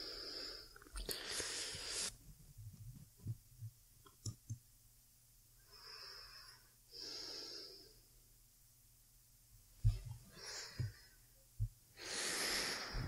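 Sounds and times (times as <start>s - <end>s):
woman breathing slowly: 0.0s - 2.2s, 5.6s - 8.1s, 9.9s - 13.0s.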